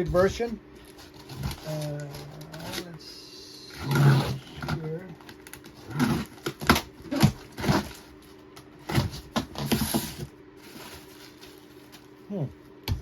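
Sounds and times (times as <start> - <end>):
cardboard boxes scraping and rustling: 5.8 - 12.0.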